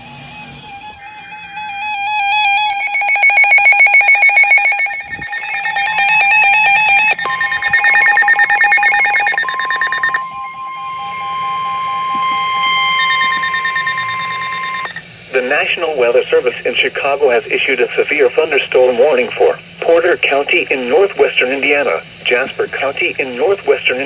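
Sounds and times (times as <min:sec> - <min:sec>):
electronic alert beeps: 0:01.9 - 0:10.7, 0:12.2 - 0:15.0
steady alert tone: 0:01.9 - 0:10.7, 0:12.2 - 0:15.0.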